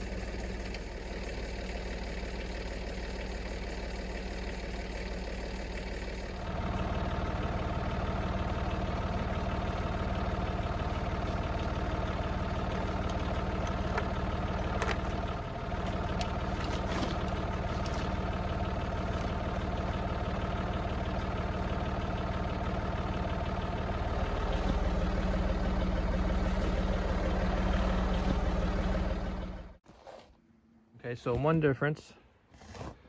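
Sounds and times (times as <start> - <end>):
engine idling: 0.0 - 29.8.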